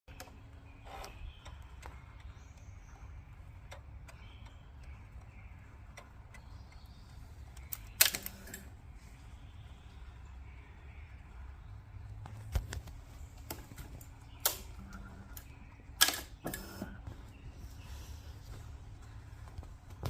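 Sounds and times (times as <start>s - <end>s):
starter circuit clicking: 0.1s - 8.8s, 13.4s - 17.0s.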